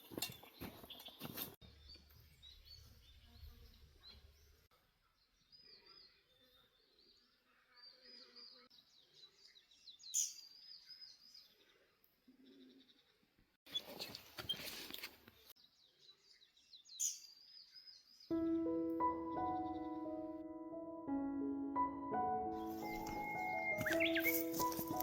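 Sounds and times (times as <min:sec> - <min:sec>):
faint bird chirps: 0:00.9 - 0:14.7, 0:15.4 - 0:18.6, 0:22.7 - 0:25.0.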